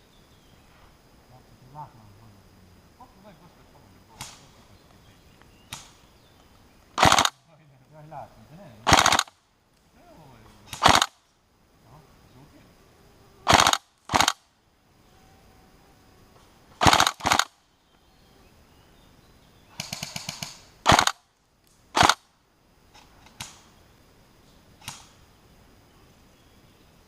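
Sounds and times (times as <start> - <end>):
faint single cracks: 4.1 - 8.0, 19.8 - 22.3, 22.9 - 23.7, 24.8 - 25.2
quieter airsoft gun shots: 4.2 - 4.5, 5.7 - 6.0, 7.0 - 7.4, 8.8 - 9.4, 10.7 - 11.2, 13.5 - 14.4, 16.8 - 17.6, 19.8 - 21.2, 22.0 - 22.2
airsoft rifle full-auto bursts: 7.0 - 7.4, 8.8 - 9.4, 10.7 - 11.2, 13.4 - 14.4, 16.8 - 17.6, 19.7 - 21.2, 21.9 - 22.2.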